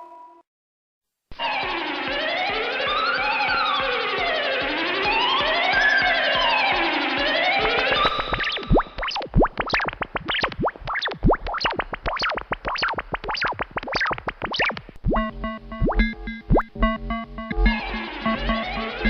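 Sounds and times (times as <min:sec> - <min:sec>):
stepped electronic bleeping tones: 0:01.7 - 0:19.0
electronic zaps sweeping in pitch: 0:07.7 - 0:16.8
steady low hum: 0:15.0 - 0:19.0.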